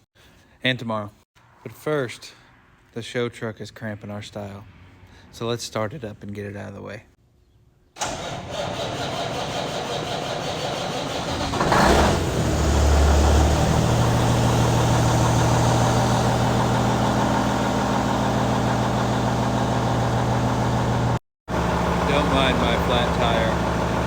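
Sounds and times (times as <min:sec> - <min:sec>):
diesel engine starting and idling: 0:08.0 - 0:24.0.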